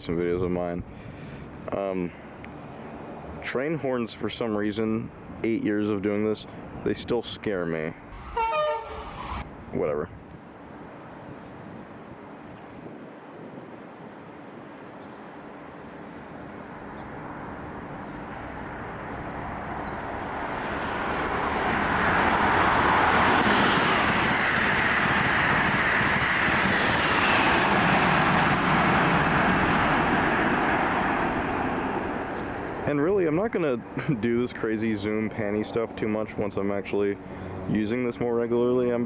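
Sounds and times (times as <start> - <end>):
high-speed train passing: 8.0 - 9.8, 10.5 - 38.8.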